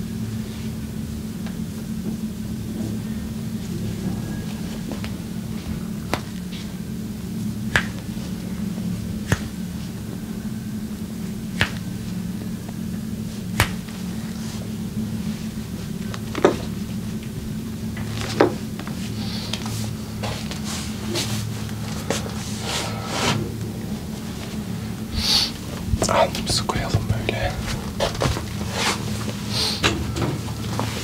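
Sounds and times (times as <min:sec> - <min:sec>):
steady low hum: 0:00.0 - 0:31.0
hands snapping: 0:06.1 - 0:06.6, 0:07.7 - 0:08.1, 0:09.2 - 0:09.6, 0:11.5 - 0:12.0, 0:13.5 - 0:14.0.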